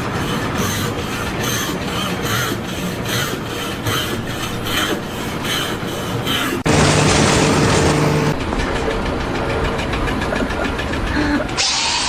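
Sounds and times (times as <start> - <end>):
rhythmic mechanical scraping: 6.6 - 8.4.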